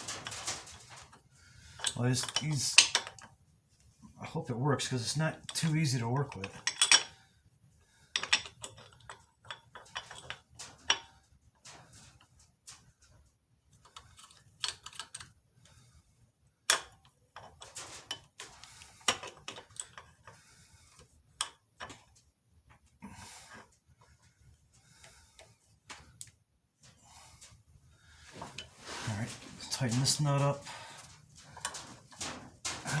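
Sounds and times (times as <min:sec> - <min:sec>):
metallic clicks and clinks: 0:29.8 - 0:33.0.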